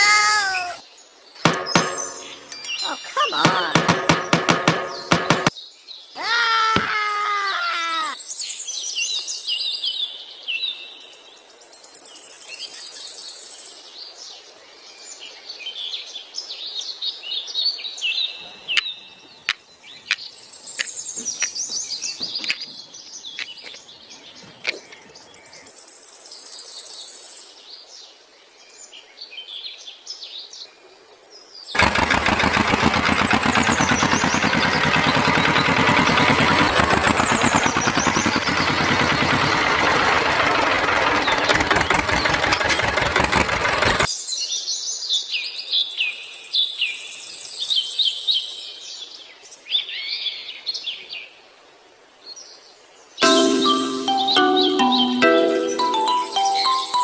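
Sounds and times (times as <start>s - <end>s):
birds chirping: 0.0s - 0.8s, 1.4s - 5.5s, 18.2s - 25.7s, 31.8s - 44.1s
loud steady machine noise: 1.4s - 2.6s, 3.4s - 5.5s, 31.8s - 44.1s
sharp taps: 3.4s - 5.5s.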